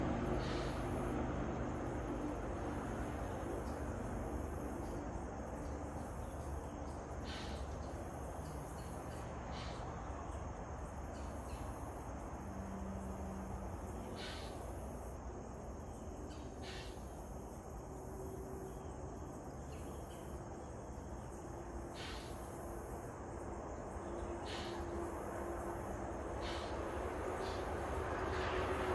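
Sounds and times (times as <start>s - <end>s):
insects buzzing: 0.0s - 28.9s.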